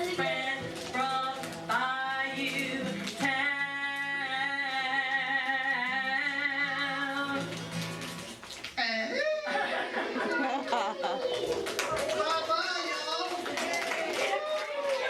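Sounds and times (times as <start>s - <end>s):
person singing: 0.0s - 7.6s.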